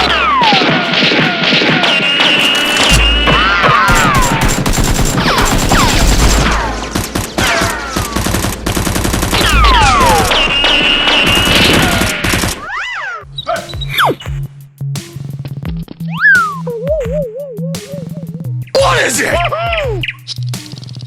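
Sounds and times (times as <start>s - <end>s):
automatic gunfire bursts: 3.8s - 12.7s
falling whistling tones: 16.1s - 17.9s.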